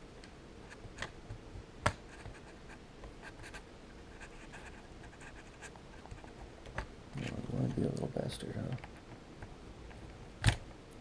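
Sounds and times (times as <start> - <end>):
faint scraping of plastic parts: 4.4 - 9.2.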